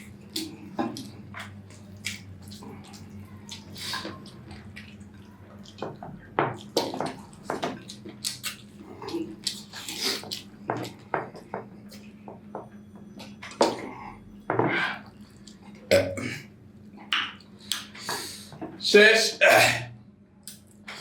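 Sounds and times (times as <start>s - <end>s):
wet chewing and smacking: 0.0s - 16.2s, 16.8s - 18.4s
slurps: 0.3s - 5.8s.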